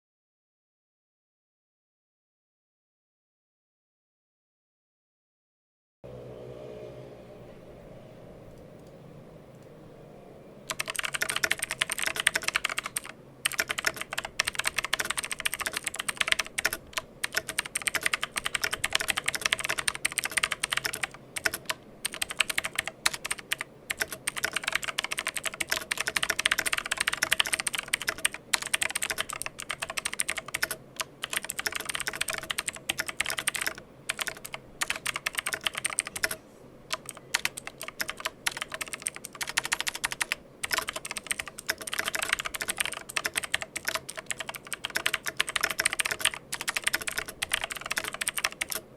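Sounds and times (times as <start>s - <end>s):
mechanical keyboard typing: 10.7s - 48.8s.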